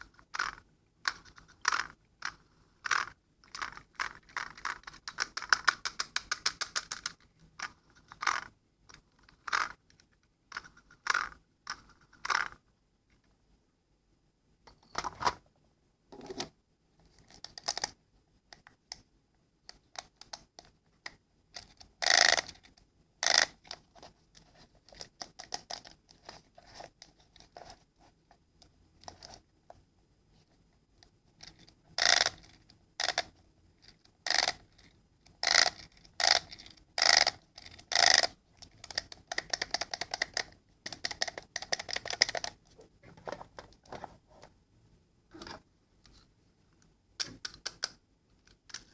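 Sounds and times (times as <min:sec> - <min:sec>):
small objects scraping and clicking: 0:00.0 - 0:12.6, 0:31.4 - 0:42.6.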